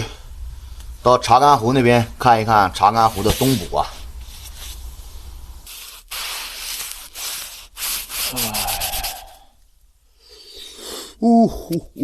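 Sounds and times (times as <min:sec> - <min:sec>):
rustling and rubbing: 0:02.6 - 0:09.4.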